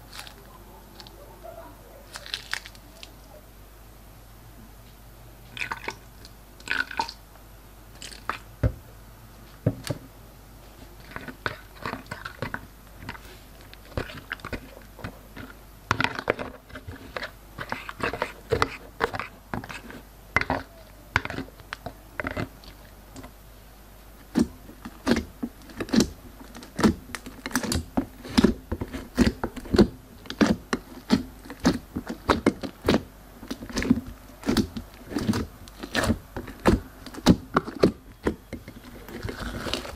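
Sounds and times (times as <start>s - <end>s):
slime squished by hand: 24.3s - 38.0s.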